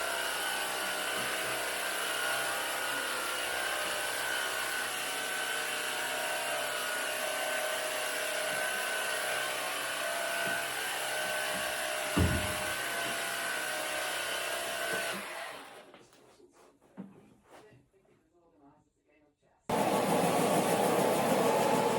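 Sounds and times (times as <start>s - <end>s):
carpet cleaning machine whining: 0.0s - 15.8s, 19.7s - 21.9s
thump: 12.1s - 13.1s.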